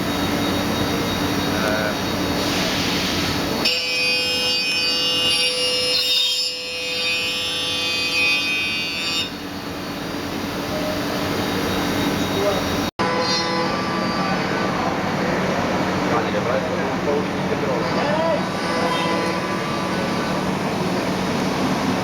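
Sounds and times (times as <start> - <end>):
milling machine running: 14.5 - 22.0.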